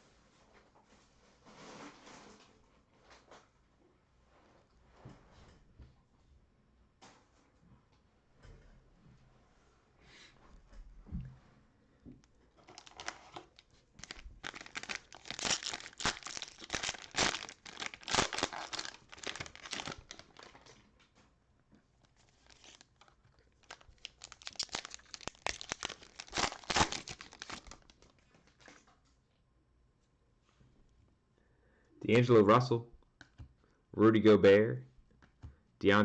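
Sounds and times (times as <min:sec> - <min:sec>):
cellophane wrappers crinkling: 0:12.5 - 0:20.8, 0:22.0 - 0:28.9.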